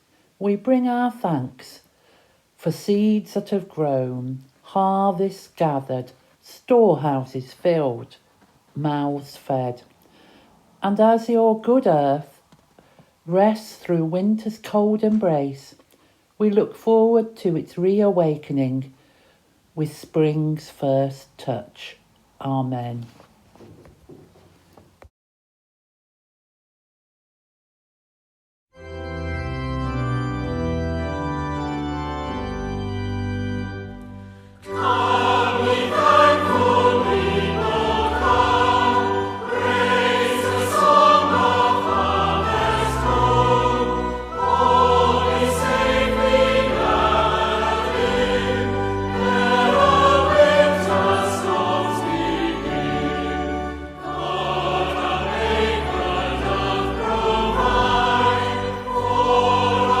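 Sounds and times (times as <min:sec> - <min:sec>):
church organ playing chords: 0:28.8 - 1:00.0
choir singing a hymn: 0:34.6 - 1:00.0.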